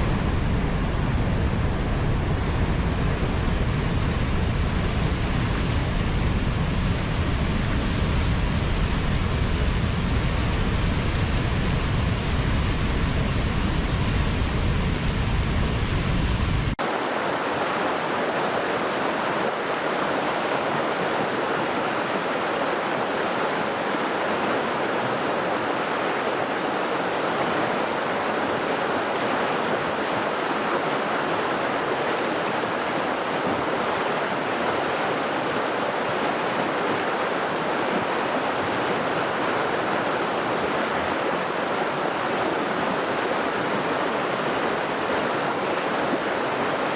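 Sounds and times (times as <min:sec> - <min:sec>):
rushing water: 0:00.0 - 0:46.9.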